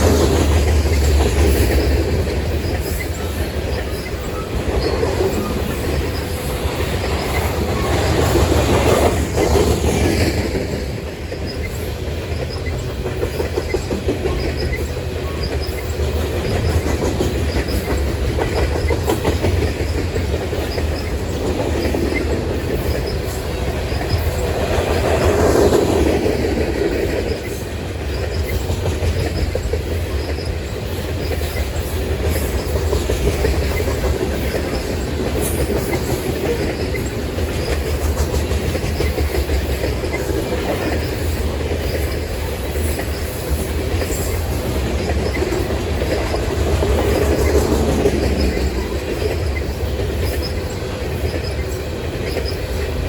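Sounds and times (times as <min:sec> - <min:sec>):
train wheels rumbling on rails: 0:00.0 - 0:53.0.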